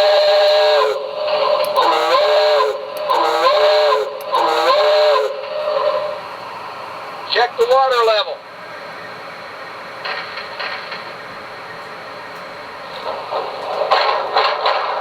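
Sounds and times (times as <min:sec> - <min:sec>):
steam locomotive whistle blasts: 0:00.0 - 0:06.2.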